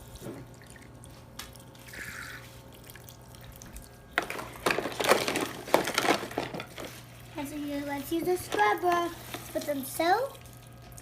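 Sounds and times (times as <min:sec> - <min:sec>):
water trickling from faucet: 0:00.0 - 0:04.2, 0:07.9 - 0:11.0
plastic dishes clattering: 0:04.2 - 0:07.0.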